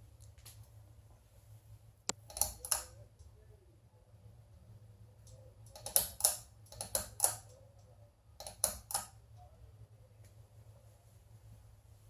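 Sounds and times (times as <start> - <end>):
steady low hum: 0.0 - 12.0
sharp clicks: 2.1 - 3.0, 5.2 - 9.1.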